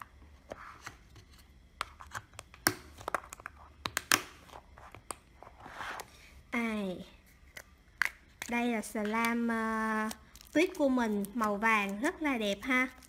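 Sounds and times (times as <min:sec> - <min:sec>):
slime and plastic boxes clicking: 0:02.2 - 0:05.2, 0:07.6 - 0:13.0.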